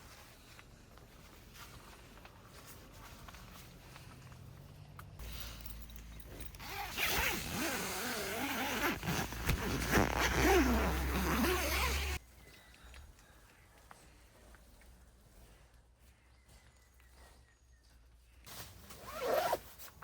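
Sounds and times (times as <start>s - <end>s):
zipper being pulled: 6.6s - 12.2s, 19.0s - 19.7s.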